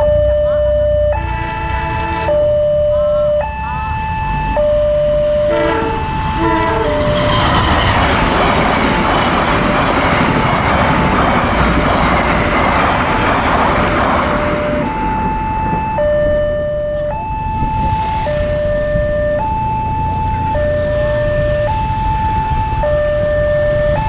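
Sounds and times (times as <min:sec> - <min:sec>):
level crossing two-tone alarm: 0:00.0 - 0:24.0
train horn blast: 0:01.0 - 0:04.6, 0:05.2 - 0:08.6
train wheels rushing on rail: 0:05.2 - 0:18.2.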